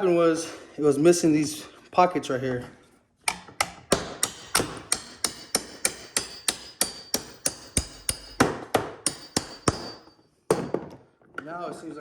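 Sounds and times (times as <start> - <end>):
hammer tapping metal: 3.3 - 10.7.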